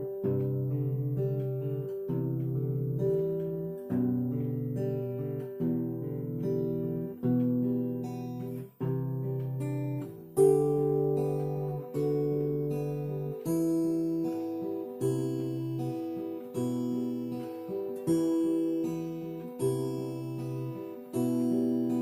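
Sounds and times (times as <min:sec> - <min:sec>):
acoustic guitar strumming chords: 0:00.0 - 0:22.0.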